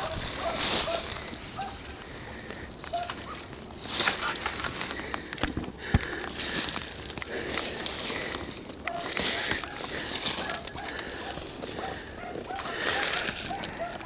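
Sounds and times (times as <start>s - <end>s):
distant dogs yelping: 0.0s - 2.1s, 2.8s - 4.4s, 8.8s - 14.0s
rustling brush: 0.0s - 14.0s
wind: 0.0s - 14.0s.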